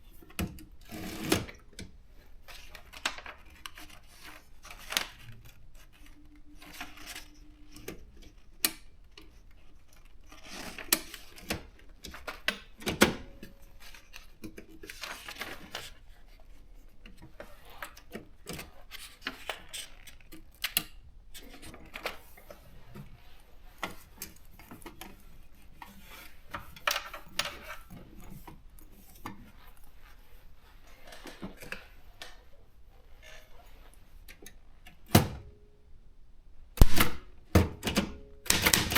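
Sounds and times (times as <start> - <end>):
typewriter key strikes: 37.8 - 38.9.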